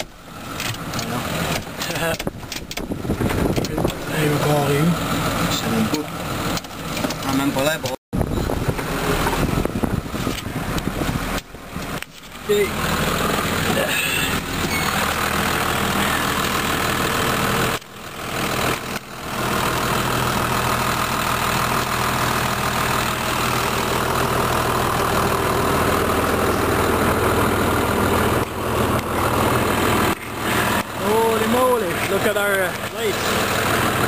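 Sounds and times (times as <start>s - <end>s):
engine idling: 0.0s - 34.0s.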